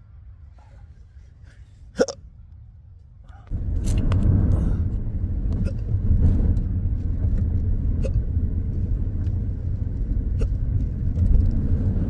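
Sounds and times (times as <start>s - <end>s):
low rumble: 0.0s - 12.0s
person hiccuping: 1.9s - 2.2s.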